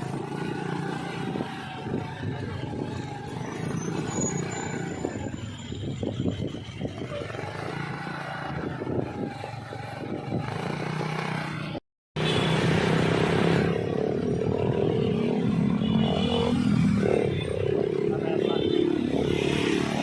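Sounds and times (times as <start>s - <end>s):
traffic noise: 0.0s - 20.0s.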